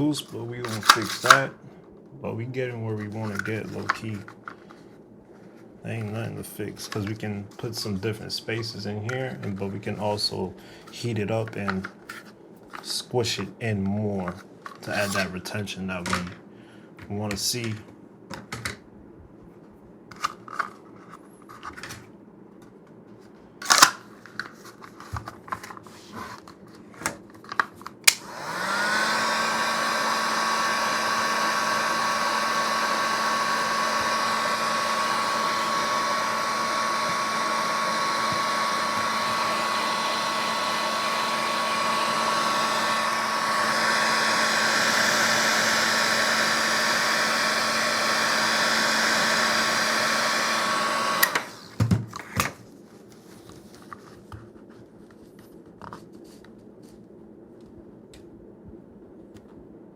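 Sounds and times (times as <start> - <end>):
heat gun whining: 0.7 - 1.5, 14.9 - 15.3, 23.6 - 24.0, 28.0 - 51.9.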